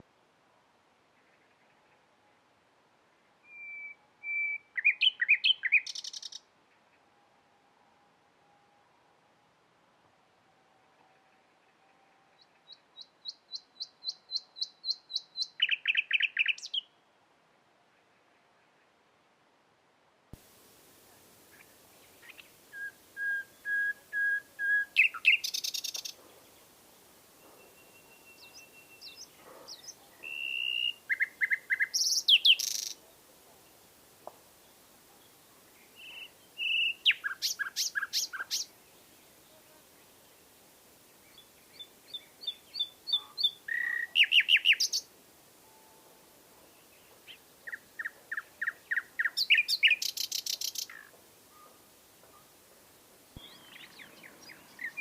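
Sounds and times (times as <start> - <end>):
nightingale singing: 3.4 - 6.9, 11.8 - 17.0, 21.5 - 40.5, 41.2 - 46.0, 46.6 - 52.6, 53.3 - 55.0.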